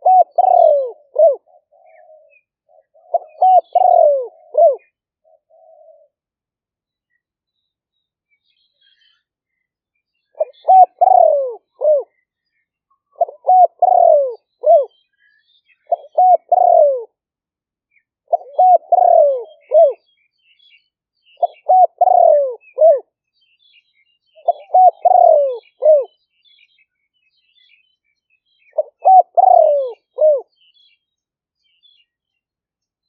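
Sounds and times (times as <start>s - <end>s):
dove cooing: 0.0s - 6.2s, 10.4s - 12.2s, 13.1s - 15.0s, 15.9s - 17.2s, 18.3s - 20.0s, 21.4s - 23.1s, 24.4s - 26.1s, 28.7s - 30.5s
small birds chirping: 0.0s - 33.0s.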